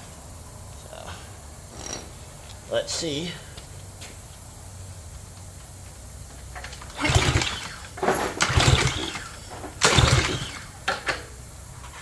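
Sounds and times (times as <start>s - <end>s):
small gas engine cranking: 6.6s - 11.1s
recoil pull-starter yanked: 6.6s - 11.2s.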